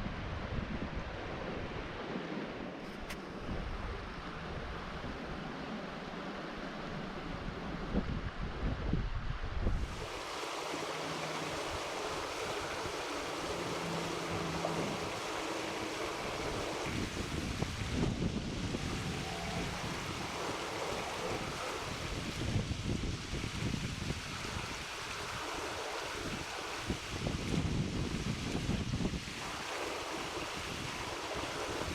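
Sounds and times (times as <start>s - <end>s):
wind: 0.0s - 31.9s
wind buffeting microphone: 7.0s - 31.9s
creek water flowing: 9.8s - 31.9s.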